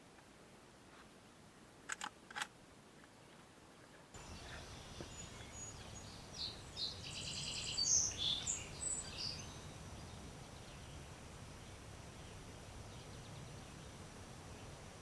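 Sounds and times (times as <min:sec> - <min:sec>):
outdoor background hiss: 0:00.0 - 0:15.0
birds singing: 0:04.2 - 0:14.8.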